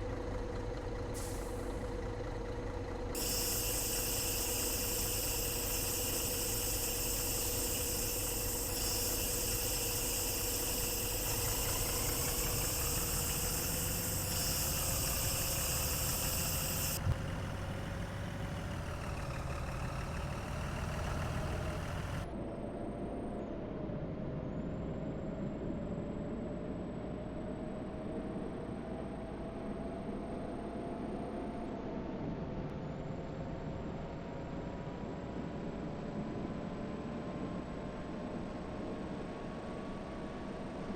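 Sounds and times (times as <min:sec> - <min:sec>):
vehicle engine droning: 0:00.0 - 0:23.4.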